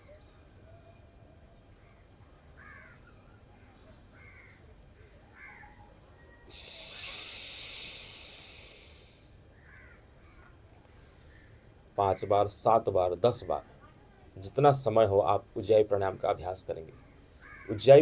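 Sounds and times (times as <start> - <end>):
crows cawing: 2.6 - 5.8, 9.6 - 11.7, 17.0 - 17.8
hissing exhalation through nostril: 6.5 - 9.3.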